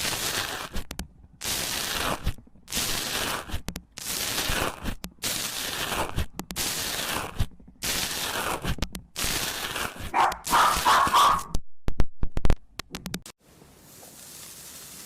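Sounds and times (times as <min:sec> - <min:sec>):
slime crackling and popping: 0:00.0 - 0:10.6.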